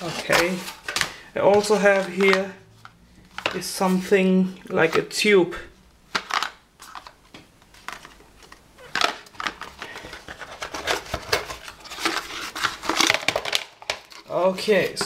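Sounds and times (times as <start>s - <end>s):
packaging rustling: 0.0s - 4.1s, 6.1s - 15.0s.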